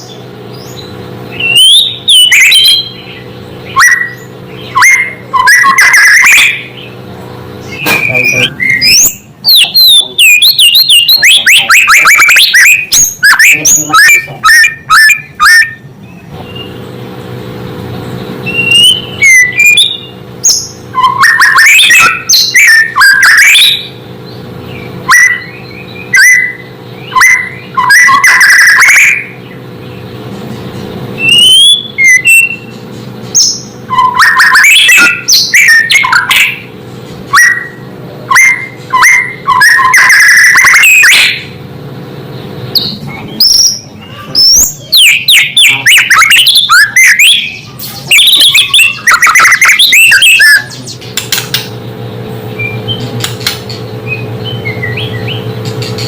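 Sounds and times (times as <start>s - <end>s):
bird singing whistled phrases: 0.0s - 7.0s, 7.6s - 16.8s, 18.4s - 24.0s, 24.7s - 29.6s, 31.2s - 32.7s, 33.4s - 36.7s, 37.4s - 41.5s, 42.8s - 51.1s, 52.6s - 53.1s, 54.0s - 55.5s.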